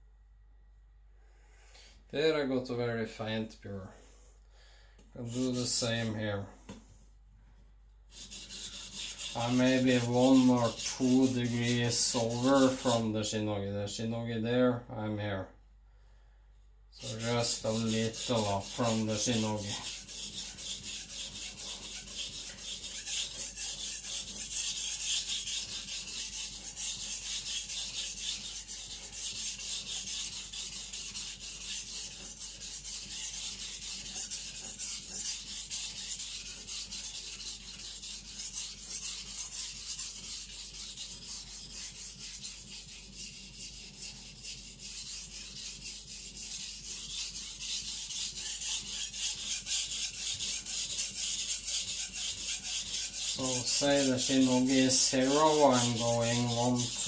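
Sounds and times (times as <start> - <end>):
knife scraping on whetstone: 8.1 - 13.0, 17.0 - 57.0.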